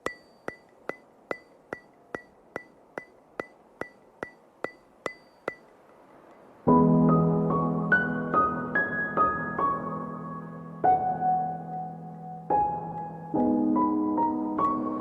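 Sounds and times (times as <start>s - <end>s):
ticking clicks with high ring: 0.0s - 6.5s.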